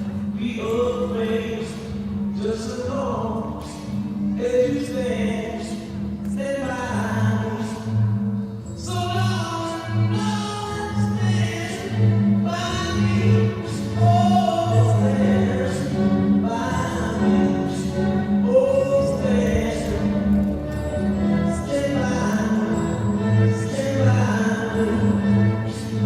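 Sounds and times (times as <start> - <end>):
low bass pulse: 19.2 - 21.6.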